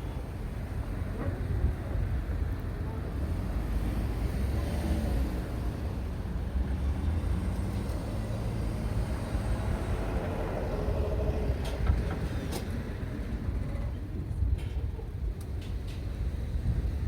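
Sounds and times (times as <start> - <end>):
vehicle engines rumbling: 0.0 - 17.0.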